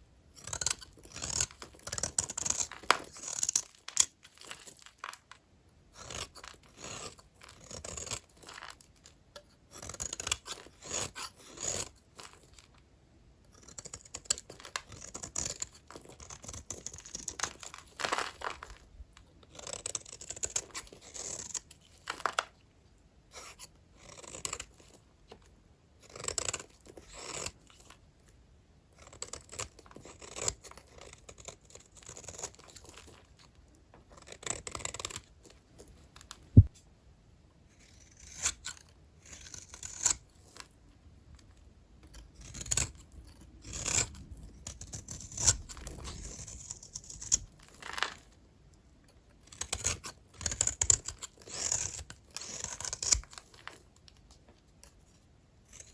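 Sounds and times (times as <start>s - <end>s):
soap bars being cut: 0.4s - 4.7s, 37.9s - 40.6s, 49.4s - 53.8s.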